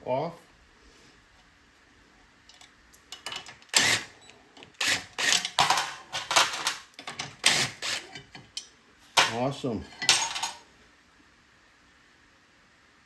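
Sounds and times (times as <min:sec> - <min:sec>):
metal parts and tools clattering: 0:02.5 - 0:04.0, 0:05.2 - 0:10.7.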